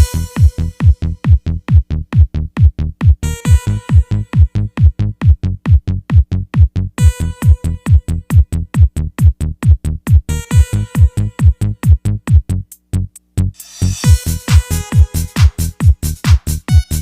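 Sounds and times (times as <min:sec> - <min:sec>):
buzzy synth note: 0:00.0 - 0:01.3, 0:13.6 - 0:17.0
fast kick drum: 0:00.0 - 0:12.6, 0:14.0 - 0:17.0.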